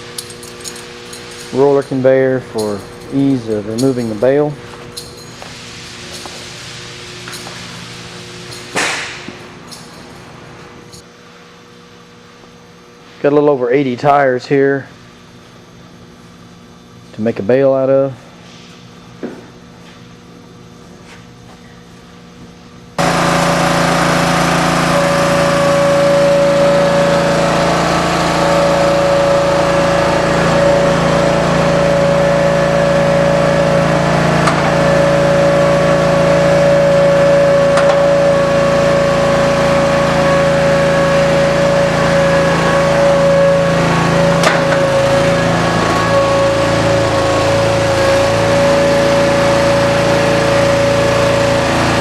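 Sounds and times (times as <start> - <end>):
hydraulic pump whine: 0.0 - 11.2, 22.9 - 52.0
gas engine running: 23.0 - 52.0.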